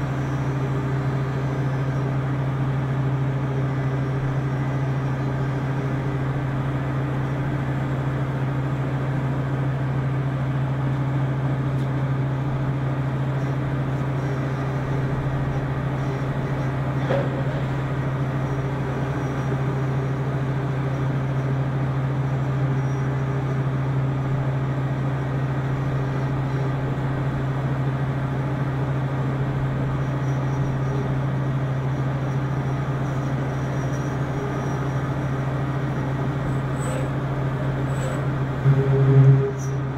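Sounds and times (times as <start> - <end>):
machining centre humming: 0.0 - 39.9
faint high whine: 32.4 - 39.9.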